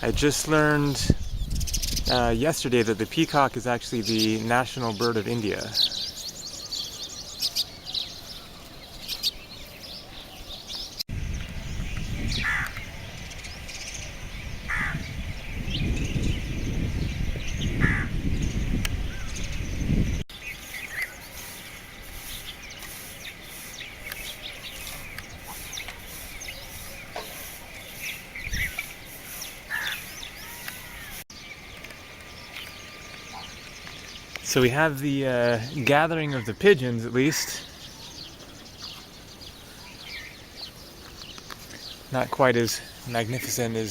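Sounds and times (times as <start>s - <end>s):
birds calling: 0.0s - 43.9s.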